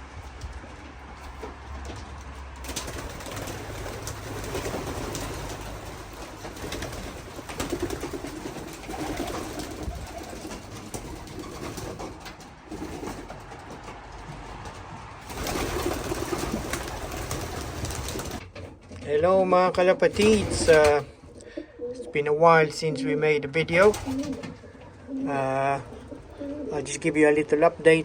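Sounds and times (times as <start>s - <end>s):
pigeons cooing: 2.7s - 13.7s, 15.2s - 18.4s, 20.1s - 27.8s.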